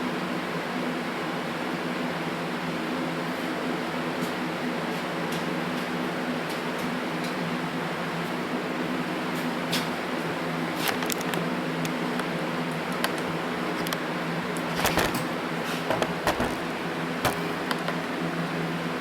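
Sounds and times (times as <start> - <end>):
low mechanical hum: 0.0 - 19.0
small clicks and taps: 12.9 - 14.0.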